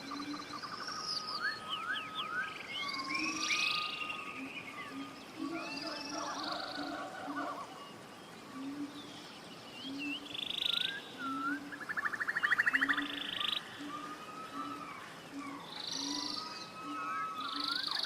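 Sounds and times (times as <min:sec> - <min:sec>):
birds whistling and trilling: 0:00.0 - 0:18.0.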